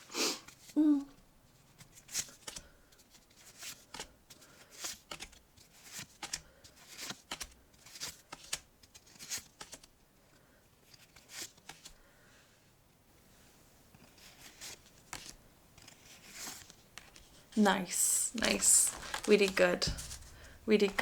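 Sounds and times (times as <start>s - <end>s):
trading cards snapping: 15.1s - 21.0s.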